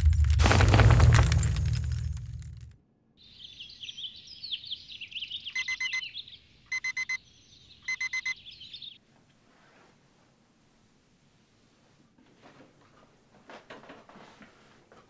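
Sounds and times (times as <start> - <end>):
birds chirping: 3.2 - 9.0
electronic alarm beeping: 5.5 - 7.2, 7.8 - 8.4.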